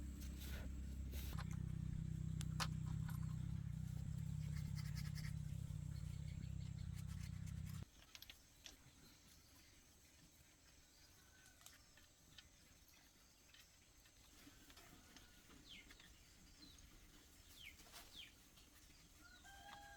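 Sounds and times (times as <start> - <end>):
machine hum: 0.0 - 7.8
light scratching and clicking: 0.0 - 8.3.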